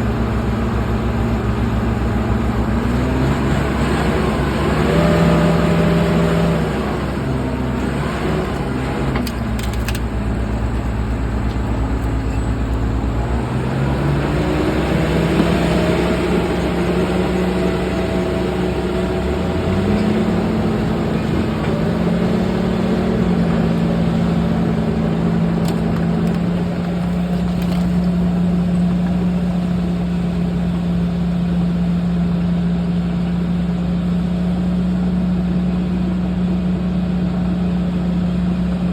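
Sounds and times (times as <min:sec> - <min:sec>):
bulldozer diesel engine: 0:00.0 - 0:38.9.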